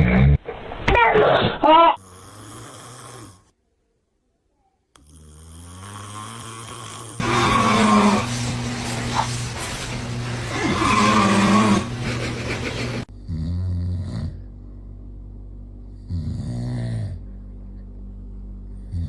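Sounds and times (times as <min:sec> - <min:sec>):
man snoring: 0:02.0 - 0:03.5, 0:05.0 - 0:09.2, 0:10.3 - 0:14.4, 0:16.0 - 0:17.2, 0:18.8 - 0:19.0
loud noisy sound: 0:07.2 - 0:13.0.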